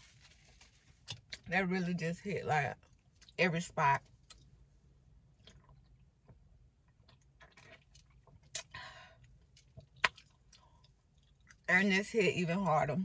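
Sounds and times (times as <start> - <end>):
person chewing: 5.4 - 6.2, 6.8 - 11.7.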